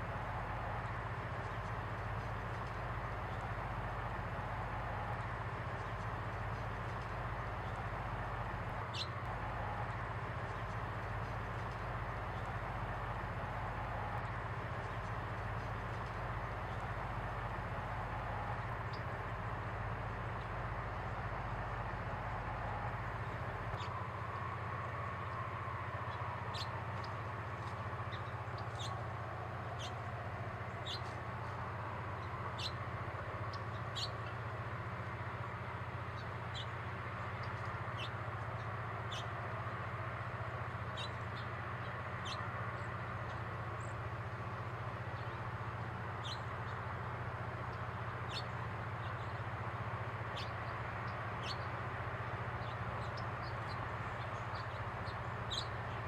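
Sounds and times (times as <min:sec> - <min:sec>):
low background rumble: 0:00.0 - 0:56.0
finch chirping: 0:32.2 - 0:32.8, 0:33.9 - 0:34.2, 0:40.9 - 0:41.5, 0:48.2 - 0:49.4, 0:50.3 - 0:51.7, 0:52.6 - 0:56.0.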